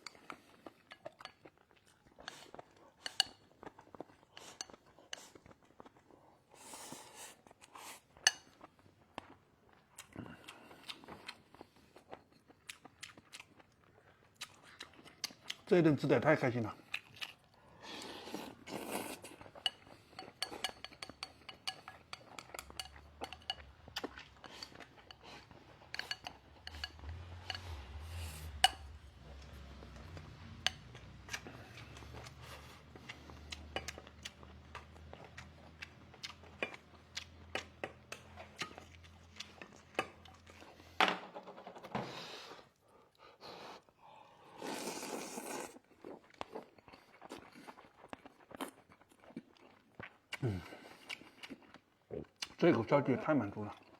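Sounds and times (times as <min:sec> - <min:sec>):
utensils scraping and clinking on bowl: 0:02.2 - 0:03.5, 0:04.4 - 0:05.3, 0:18.0 - 0:32.9.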